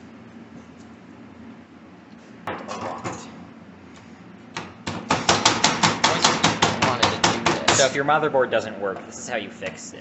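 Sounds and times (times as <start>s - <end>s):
hammer striking circuit board: 4.6s - 7.9s.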